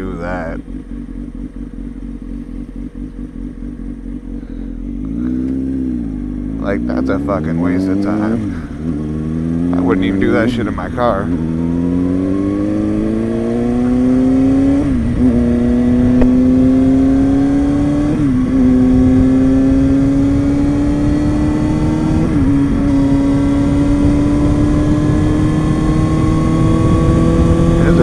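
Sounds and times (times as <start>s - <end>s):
motorcycle engine accelerating: 0.0s - 28.0s
wind on microphone: 12.5s - 28.0s.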